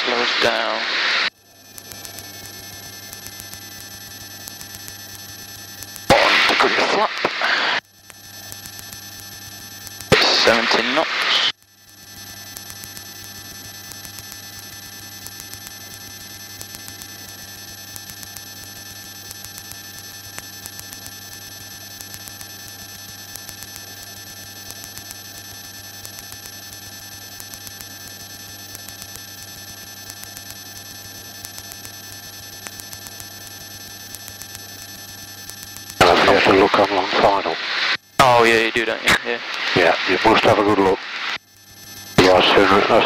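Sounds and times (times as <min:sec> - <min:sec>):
faint regular ticking: 0:01.6 - 0:06.1.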